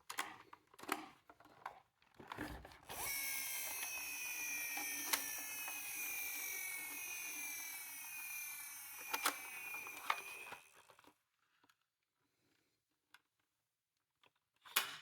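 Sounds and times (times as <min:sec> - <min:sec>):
toy car motor whining: 0:02.9 - 0:11.0.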